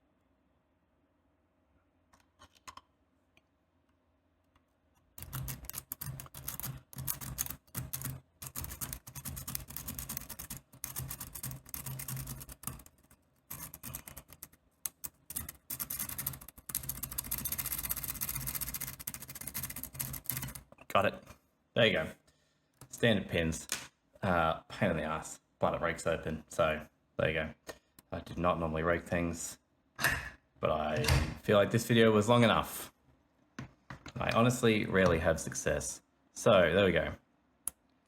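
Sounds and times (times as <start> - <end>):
metallic clicking and scratching: 5.2 - 20.6.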